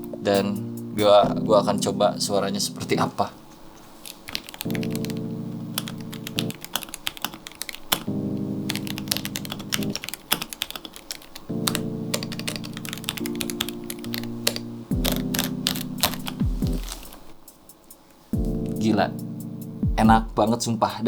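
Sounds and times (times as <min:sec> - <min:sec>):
music of held chords: 0:00.0 - 0:03.2, 0:04.6 - 0:10.6, 0:11.4 - 0:21.0
mechanical keyboard clacks: 0:04.1 - 0:17.2.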